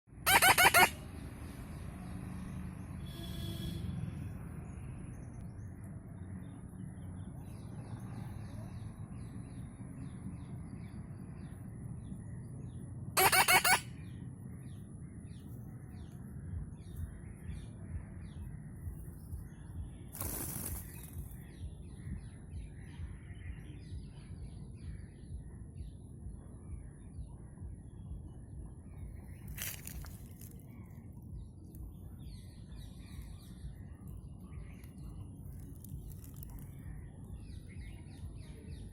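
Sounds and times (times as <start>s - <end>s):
parakeet harsh squawk: 0.2s - 1.0s, 13.2s - 13.9s.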